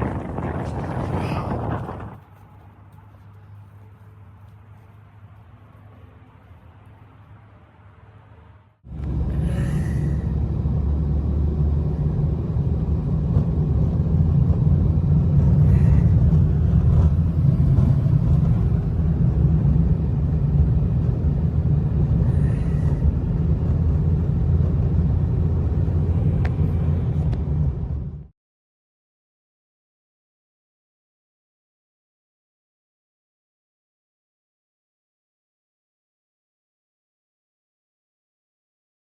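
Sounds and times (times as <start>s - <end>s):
storm wind rumbling: 0.0s - 2.3s, 8.9s - 28.3s.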